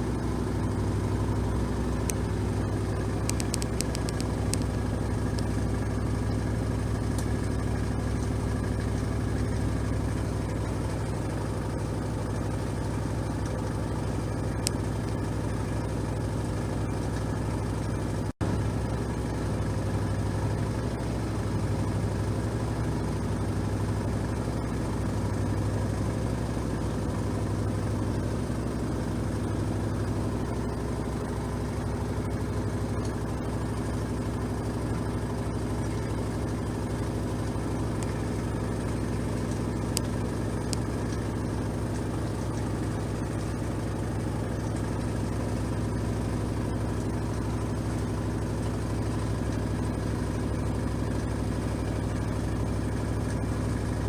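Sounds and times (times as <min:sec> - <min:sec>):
washing machine spinning: 0:00.0 - 0:54.0.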